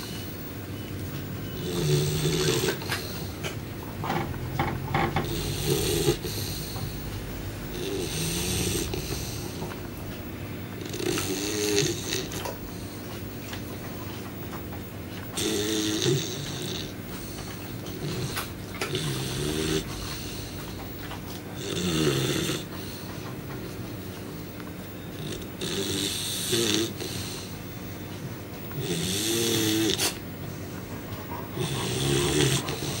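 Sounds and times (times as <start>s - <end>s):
pet snoring: 1.4s - 9.9s, 10.8s - 14.3s, 15.2s - 28.0s, 28.7s - 33.0s.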